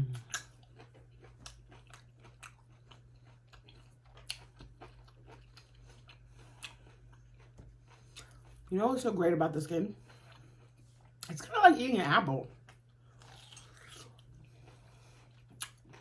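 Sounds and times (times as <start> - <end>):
biting and chewing mango: 0.0 - 8.7, 12.4 - 16.0.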